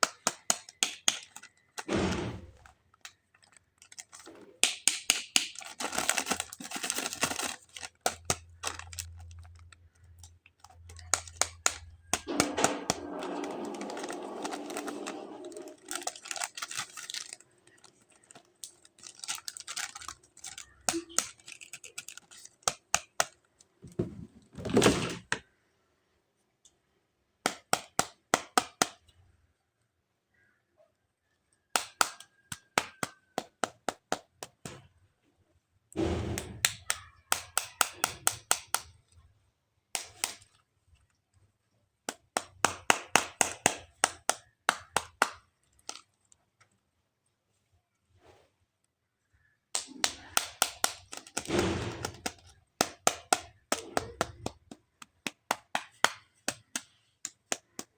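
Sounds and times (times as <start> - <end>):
plastic toy parts clicking: 0.0 - 1.9, 2.6 - 23.7, 36.6 - 39.2, 42.0 - 46.8, 49.7 - 57.9
packaging crinkling: 2.9 - 12.4, 13.0 - 23.2.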